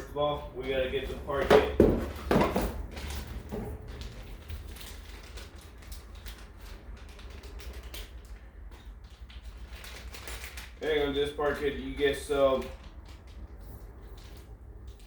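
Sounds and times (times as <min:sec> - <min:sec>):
packaging rustling: 0:00.9 - 0:10.8.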